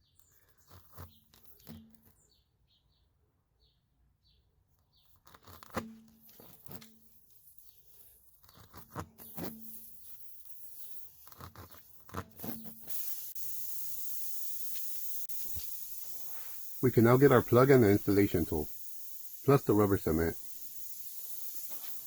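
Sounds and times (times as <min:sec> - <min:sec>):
steady hiss: 0:12.4 - 0:22.0.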